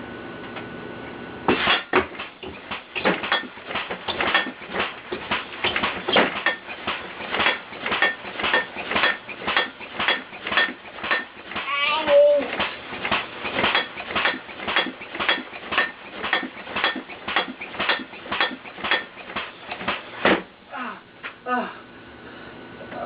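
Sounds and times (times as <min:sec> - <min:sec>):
clanging on metal: 0:01.5 - 0:11.8.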